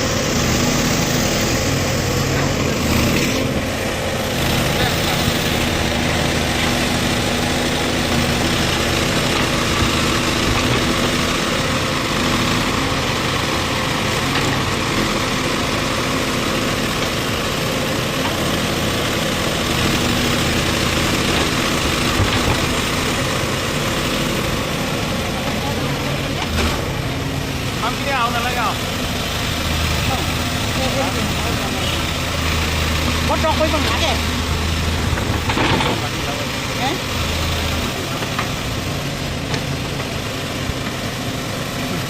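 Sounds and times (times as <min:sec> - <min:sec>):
diesel engine idling: 0:00.0 - 0:42.0.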